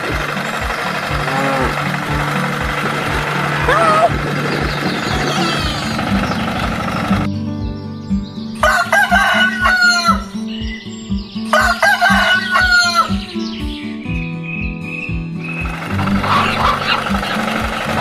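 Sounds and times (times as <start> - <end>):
background music with beat: 0.0 - 18.0
rooster crowing: 1.1 - 6.3, 8.6 - 10.3, 11.5 - 13.2.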